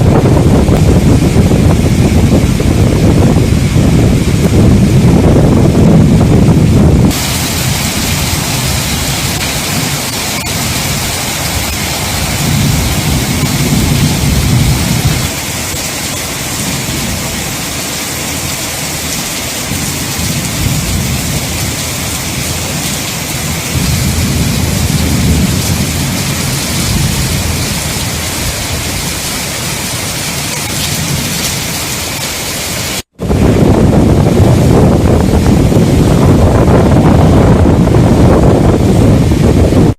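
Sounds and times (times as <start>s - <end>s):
low rumbling: 0.0s - 18.4s, 33.0s - 39.9s
heavy rain pouring: 0.0s - 39.9s.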